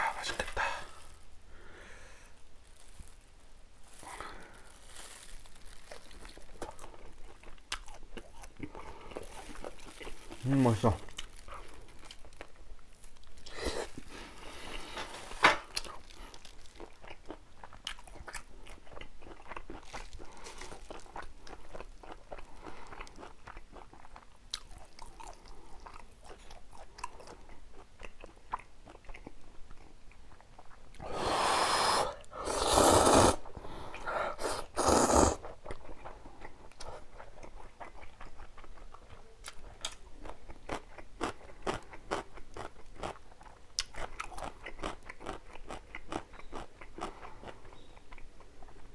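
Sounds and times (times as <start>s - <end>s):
chewing and biting: 5.7s - 14.2s, 15.7s - 33.3s, 34.4s - 48.9s
wet mouth clicks: 31.0s - 33.5s, 34.4s - 35.4s.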